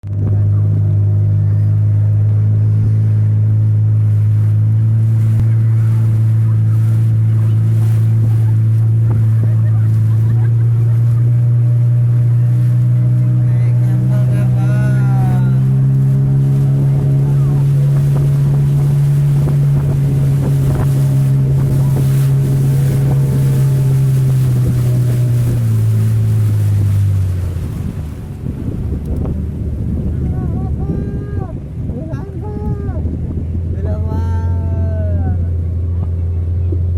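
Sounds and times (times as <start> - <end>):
boat engine humming: 0.0 - 36.9
wind noise on microphone: 0.0 - 36.9.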